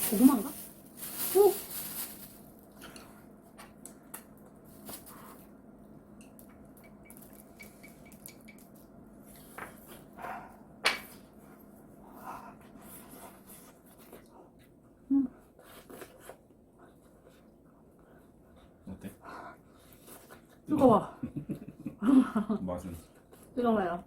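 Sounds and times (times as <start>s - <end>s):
clicks and taps of utensils: 6.2s - 8.8s.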